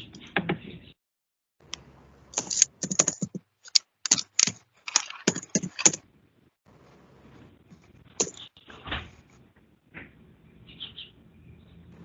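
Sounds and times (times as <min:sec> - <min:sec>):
computer keyboard typing: 0:02.4 - 0:06.0.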